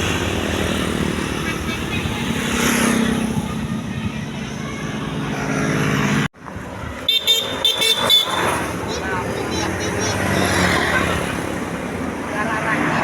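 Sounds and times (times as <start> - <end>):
bus engine and road noise: 0.0 - 13.0
musical bus horn notes: 7.1 - 8.5.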